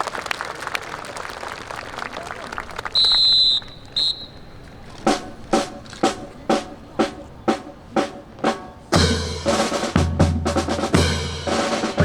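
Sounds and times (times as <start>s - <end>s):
whistle blasts: 2.9s - 5.4s
drum beating steadily: 5.0s - 12.0s.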